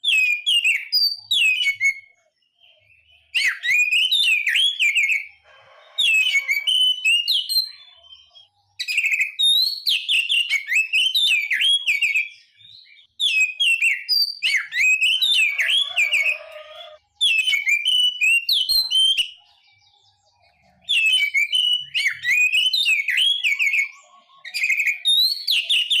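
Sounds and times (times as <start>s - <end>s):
bird singing whistled notes: 0.0s - 26.0s.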